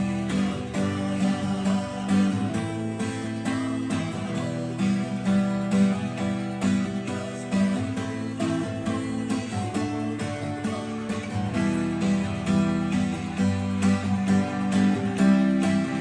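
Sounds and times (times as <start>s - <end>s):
acoustic guitar strumming chords: 0.0s - 16.0s.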